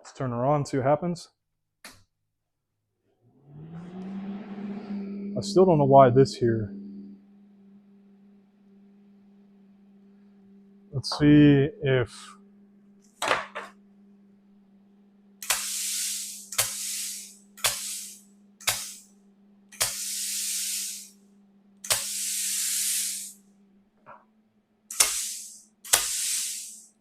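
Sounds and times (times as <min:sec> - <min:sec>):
machine electrical hum: 0:03.3 - 0:27.0
air valve clicks: 0:15.4 - 0:19.0, 0:19.7 - 0:21.1, 0:21.8 - 0:23.3, 0:24.9 - 0:26.9
hiss of compressed air: 0:15.4 - 0:19.1, 0:19.8 - 0:21.2, 0:21.8 - 0:23.4, 0:24.9 - 0:27.0.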